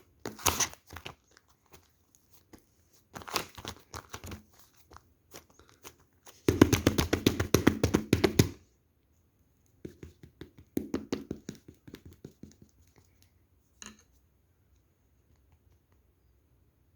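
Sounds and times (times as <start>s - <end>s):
soft hand taps: 9.8s - 13.3s.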